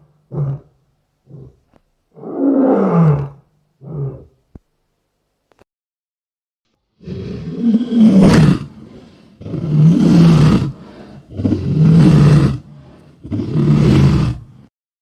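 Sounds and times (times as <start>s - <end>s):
lion roaring: 0.0s - 4.4s, 7.0s - 14.7s.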